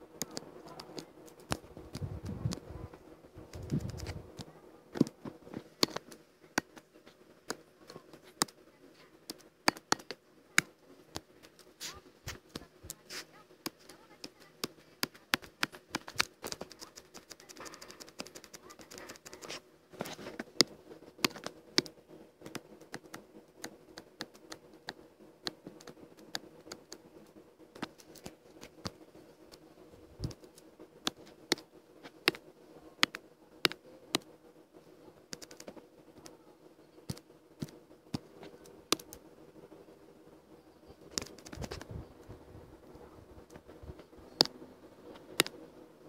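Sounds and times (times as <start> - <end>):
faint steady hum: 0.0 - 46.0
computer keyboard typing: 0.2 - 2.6, 3.4 - 5.2, 5.8 - 6.8, 7.4 - 8.6, 9.2 - 13.0, 13.6 - 19.6, 20.4 - 29.6, 30.2 - 32.4, 33.0 - 34.3, 35.3 - 36.4, 37.1 - 39.2, 41.0 - 42.3, 44.3 - 44.6, 45.2 - 45.6
mouse clicking: 0.2 - 2.7, 3.4 - 5.2, 5.8 - 8.6, 9.2 - 19.6, 20.4 - 27.0, 27.7 - 29.6, 30.2 - 32.4, 33.0 - 34.3, 35.3 - 36.4, 37.1 - 39.2, 41.1 - 42.3, 44.3 - 45.6.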